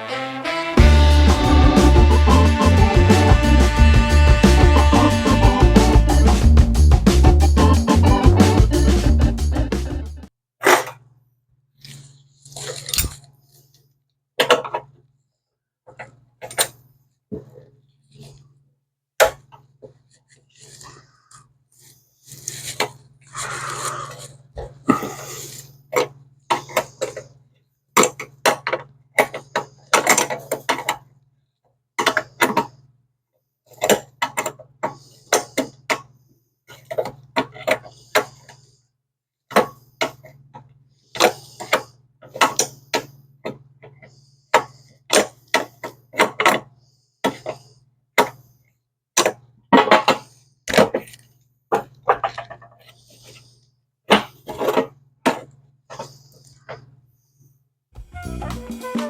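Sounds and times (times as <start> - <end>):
hand tools clicking on metal: 12.8 - 13.3.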